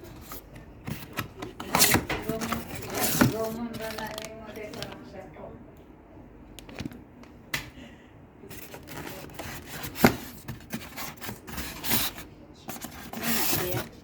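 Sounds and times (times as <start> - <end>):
packaging rustling: 0.0 - 5.1, 8.5 - 14.0.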